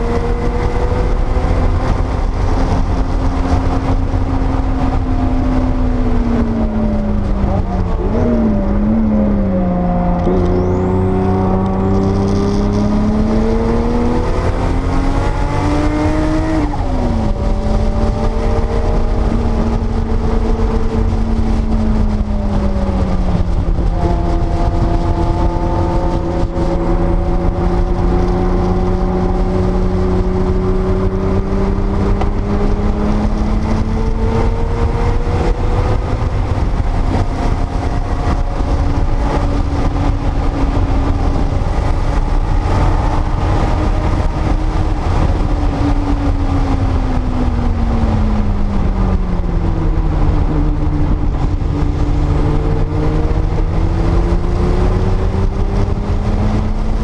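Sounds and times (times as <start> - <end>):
heavy low rumble: 0.0 - 57.0
turbocharged engine at speed: 0.0 - 57.0.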